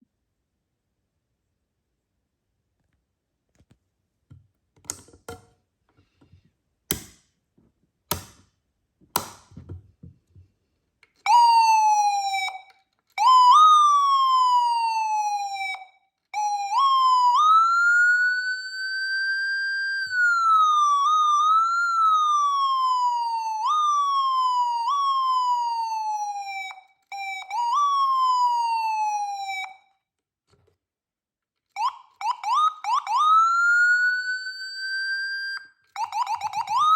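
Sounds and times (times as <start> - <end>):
electronic siren tones: 31.8 - 36.9.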